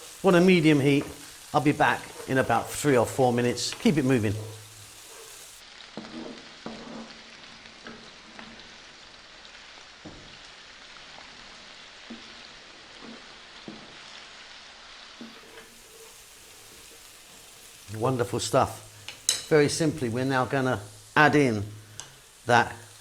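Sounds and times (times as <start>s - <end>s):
utensil stirring and knocking pan: 0.0s - 7.2s, 10.0s - 10.4s, 12.0s - 14.0s, 15.2s - 18.3s, 19.0s - 20.1s
vegetables sizzling in oil: 0.0s - 23.0s.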